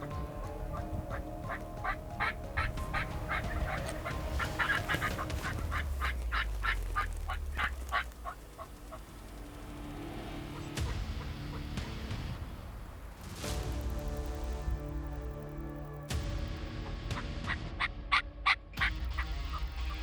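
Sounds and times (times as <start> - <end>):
turkey yelping: 0.0 - 9.2.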